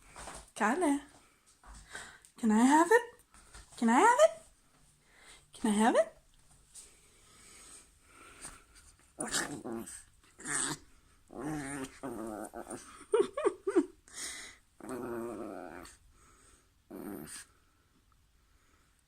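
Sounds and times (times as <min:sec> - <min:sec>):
dog growling in play: 0:09.2 - 0:13.4, 0:14.8 - 0:17.6.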